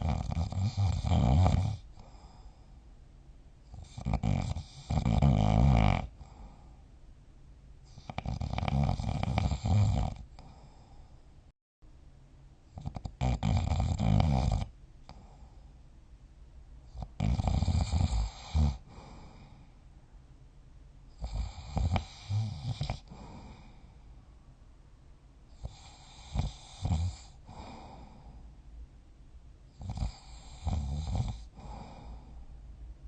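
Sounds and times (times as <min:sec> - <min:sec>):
person snoring: 0:00.0 - 0:02.6, 0:03.7 - 0:06.7, 0:07.9 - 0:11.0, 0:12.8 - 0:15.5, 0:17.0 - 0:19.6, 0:21.2 - 0:23.9, 0:25.6 - 0:28.4, 0:29.8 - 0:32.4
quiet breathing: 0:00.0 - 0:05.0, 0:06.0 - 0:07.1, 0:09.6 - 0:11.5, 0:14.6 - 0:16.0, 0:17.8 - 0:20.2, 0:21.1 - 0:24.6, 0:25.4 - 0:28.8, 0:29.6 - 0:33.0.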